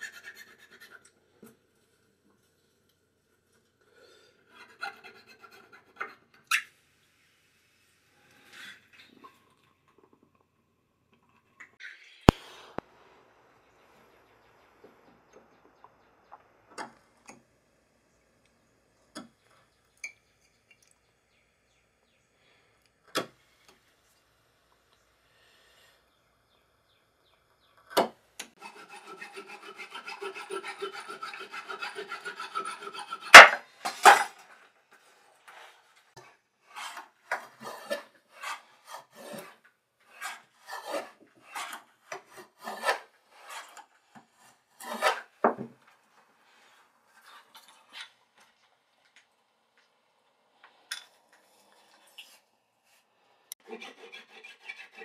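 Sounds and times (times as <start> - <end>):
rasping strokes on wood: 28.5 - 33.6, 36.7 - 45.4, 53.6 - 55.0
saw strokes with ringing tone: 28.6 - 33.4.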